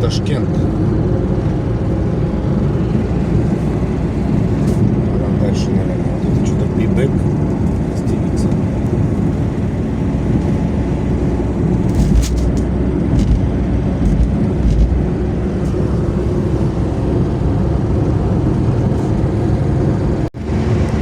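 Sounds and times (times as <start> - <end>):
car engine and road noise: 0.0 - 21.0
low thumps: 11.8 - 15.2.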